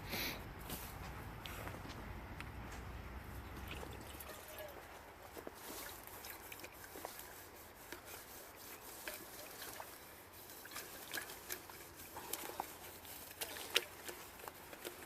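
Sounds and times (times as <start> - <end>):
water trickling: 3.4 - 15.0.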